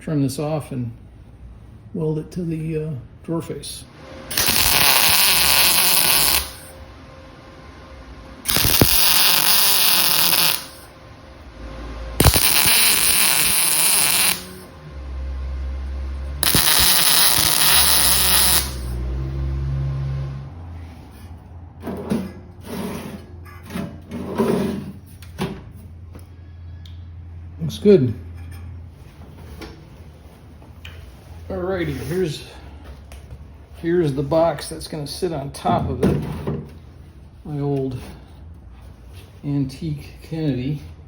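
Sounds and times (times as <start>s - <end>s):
welding arc crackling: 4.3s - 6.8s, 8.4s - 11.0s, 12.2s - 14.8s, 16.4s - 19.0s.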